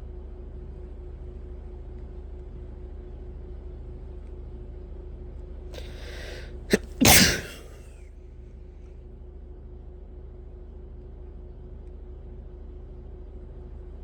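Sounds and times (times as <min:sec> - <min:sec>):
hissing in-breath: 0:05.8 - 0:07.8
person sneezing: 0:05.8 - 0:07.8.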